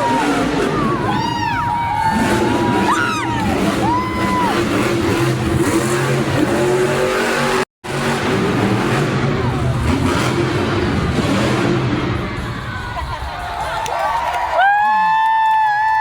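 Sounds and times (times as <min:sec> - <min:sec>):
truck engine revving loudly: 0:00.0 - 0:12.5.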